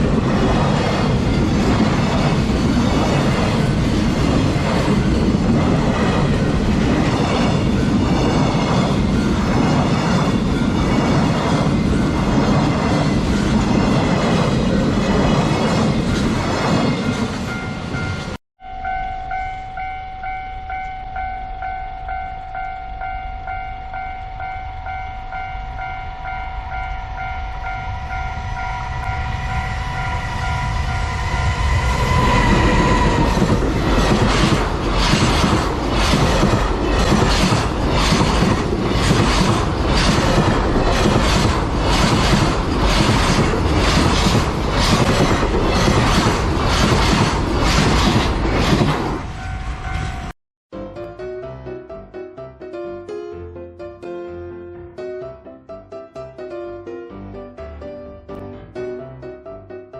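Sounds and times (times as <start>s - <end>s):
train rumble: 0.0s - 50.4s
train horn blast: 26.7s - 34.0s
train wheels clacking on rail joints: 32.1s - 50.3s.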